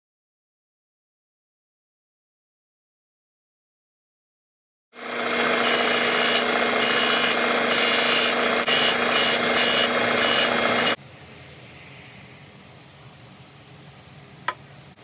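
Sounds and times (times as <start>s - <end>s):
electric power tool humming: 5.0s - 11.0s.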